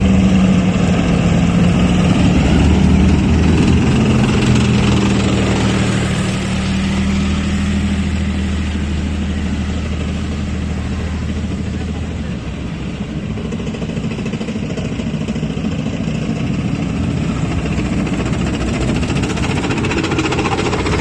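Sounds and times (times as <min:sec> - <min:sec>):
heavy vehicle engines passing: 0:00.0 - 0:21.0.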